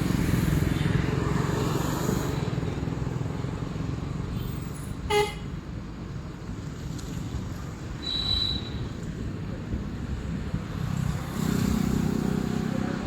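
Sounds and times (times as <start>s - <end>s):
road traffic rumble: 0.0s - 13.0s
vehicle horn toot: 5.1s - 5.5s.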